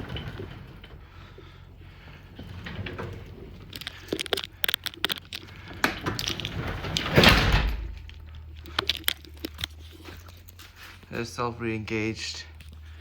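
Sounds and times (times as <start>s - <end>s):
garage door rattling: 0.0s - 10.2s
garage door clicks and knocks: 5.5s - 8.5s.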